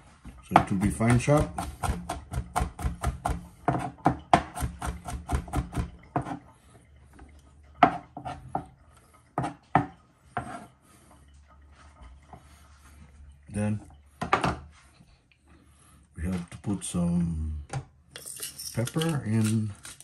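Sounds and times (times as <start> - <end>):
knife chopping on a board: 1.1 - 6.4.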